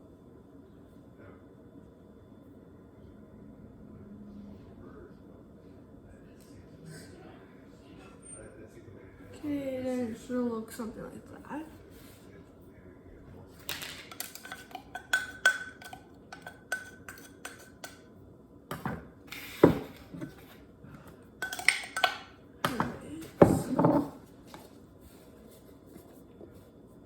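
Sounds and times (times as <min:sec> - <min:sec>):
utensils clinking against bowl: 0:13.6 - 0:18.1, 0:21.4 - 0:24.2.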